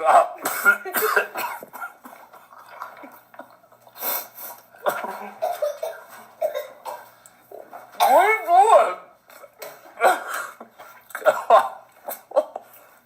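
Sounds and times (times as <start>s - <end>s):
man coughing and gagging: 0.0s - 2.2s, 4.8s - 7.2s, 8.0s - 8.6s, 9.8s - 12.8s.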